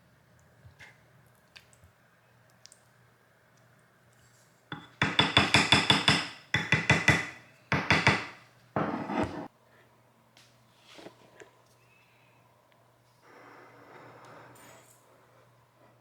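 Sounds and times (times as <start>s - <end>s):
fast sharp knocks: 5.0s - 8.4s.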